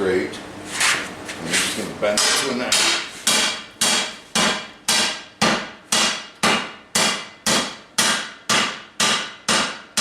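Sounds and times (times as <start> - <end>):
hammer striking hot steel: 2.2 - 10.0.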